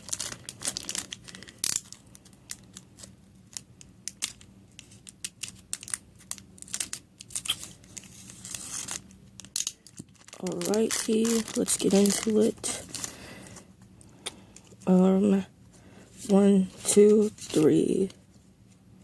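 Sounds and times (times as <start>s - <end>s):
foil wrapper crinkling and tearing: 0.0s - 13.6s.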